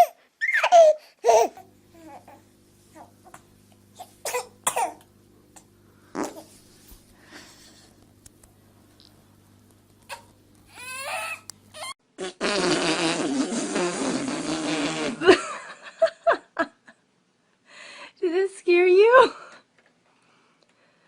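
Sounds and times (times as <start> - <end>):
long raspy fart: 6.0 - 6.5, 11.8 - 15.4.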